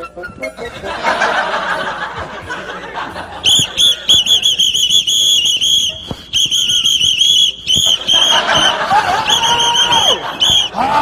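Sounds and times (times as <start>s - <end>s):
laughter: 0.7s - 4.3s, 8.0s - 11.0s
shrill whistle blasts: 3.4s - 10.8s.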